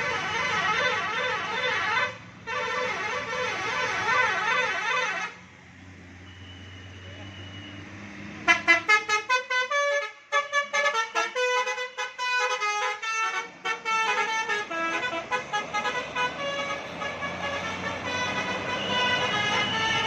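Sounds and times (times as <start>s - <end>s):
bus musical horn tune: 0.0s - 5.4s, 8.4s - 20.0s.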